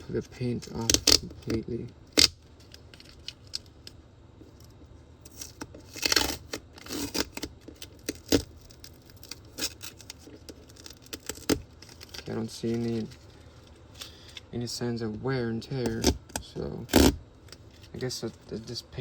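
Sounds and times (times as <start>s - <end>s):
tape peeling off a wall: 0.4s - 4.0s, 5.2s - 14.3s, 15.8s - 18.0s.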